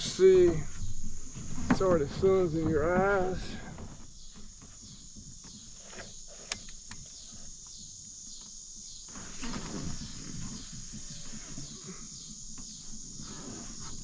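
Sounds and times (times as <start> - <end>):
low shuffling: 0.0 - 7.6
crickets chirping: 0.0 - 14.0
sharp click: 6.4 - 7.1.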